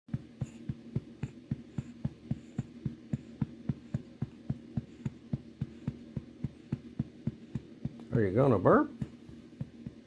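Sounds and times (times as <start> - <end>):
constant low hum: 0.1 - 10.0
soft patting on baby's back: 0.1 - 10.0.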